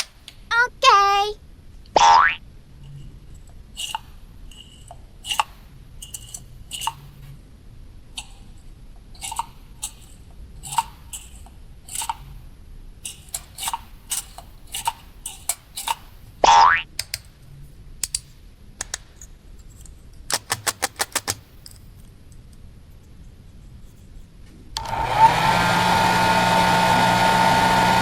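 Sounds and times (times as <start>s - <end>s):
plastic toy pieces clicking: 3.8s - 7.1s, 13.1s - 16.2s, 16.9s - 17.4s, 18.0s - 21.9s.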